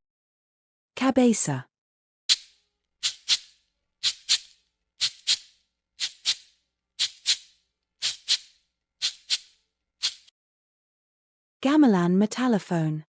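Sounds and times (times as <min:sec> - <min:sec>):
cabasa rasping shakes: 0:02.3 - 0:10.3.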